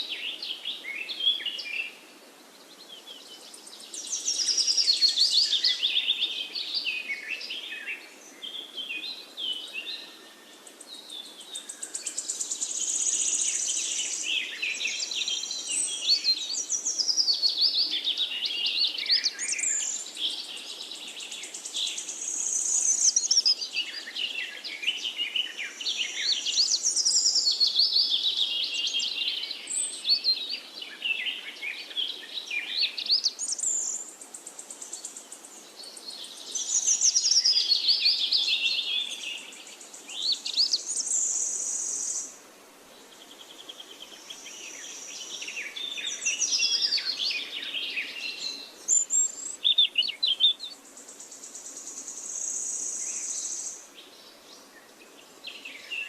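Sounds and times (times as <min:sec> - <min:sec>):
songbirds singing: 0:00.0 - 0:56.0.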